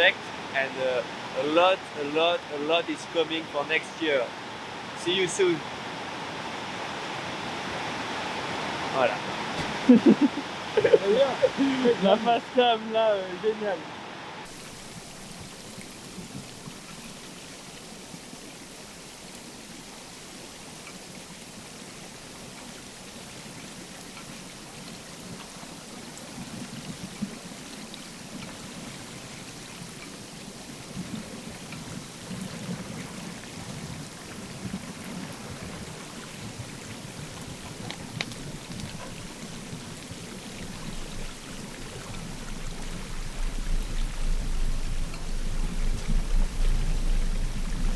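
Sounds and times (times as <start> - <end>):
underwater rushing water: 0.0 - 47.9
low churning: 35.5 - 47.9.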